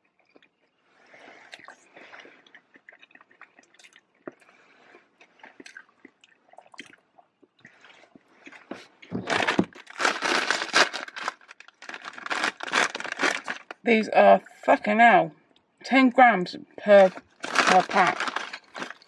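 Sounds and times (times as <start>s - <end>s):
chewing and mouth clicks: 0.0s - 0.8s, 1.4s - 9.1s
plastic snack packaging crinkling: 8.6s - 13.8s, 16.9s - 19.0s.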